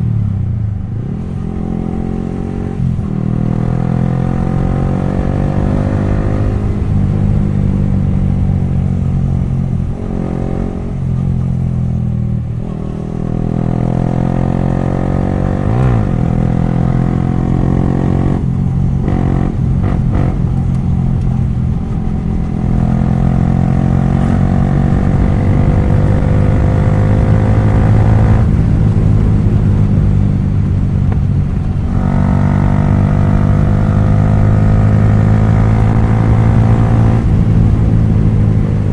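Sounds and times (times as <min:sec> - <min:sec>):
loud motorcycle engine revving: 0:01.0 - 0:07.6, 0:12.6 - 0:20.7, 0:21.8 - 0:30.5, 0:31.8 - 0:38.9.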